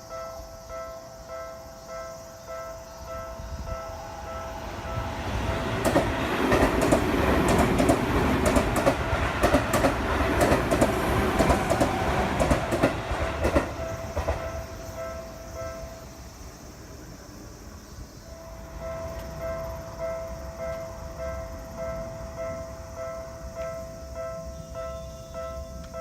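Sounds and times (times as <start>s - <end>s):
crossing warning bell ringing: 0.0s - 16.3s, 18.3s - 26.0s
train wheels clattering on rails: 4.6s - 15.8s.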